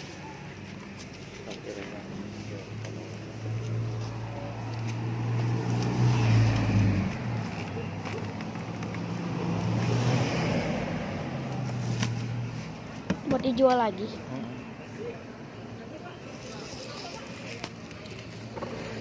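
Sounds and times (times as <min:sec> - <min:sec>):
vehicles passing: 0:00.0 - 0:19.0.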